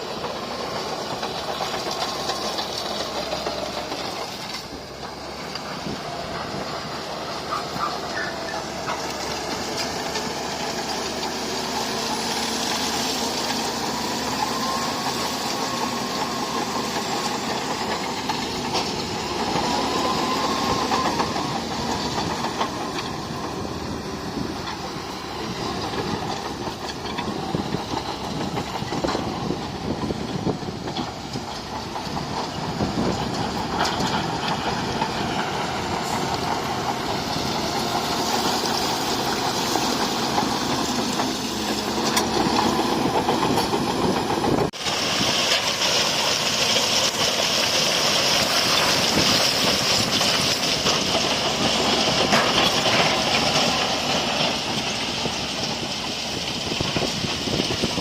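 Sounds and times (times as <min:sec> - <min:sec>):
bulldozer diesel engine running: 0:00.0 - 0:58.0
steel tracks clattering: 0:00.0 - 0:58.0.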